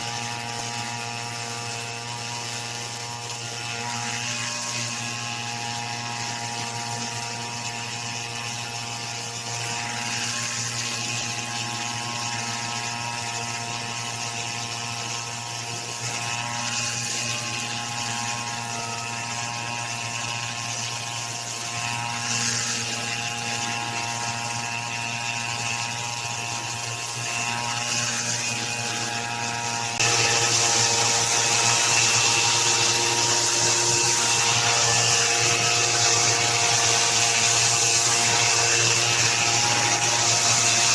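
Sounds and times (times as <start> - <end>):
small engine running steadily: 0.0 - 40.9.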